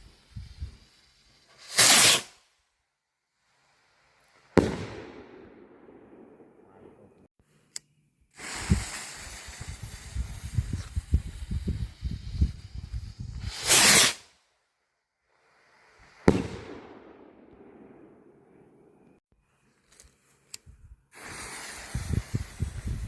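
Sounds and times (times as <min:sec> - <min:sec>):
rocket launch whoosh: 0:01.6 - 0:02.3, 0:12.4 - 0:14.3
firework bang: 0:04.6 - 0:06.6, 0:16.2 - 0:18.2
gusty rumble with low thumps: 0:09.6 - 0:13.5.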